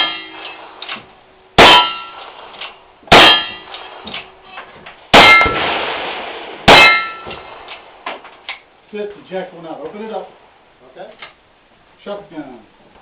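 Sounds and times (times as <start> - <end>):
steel target clanging: 0.0 - 1.0, 1.6 - 8.5
gunshots: 5.1 - 8.3.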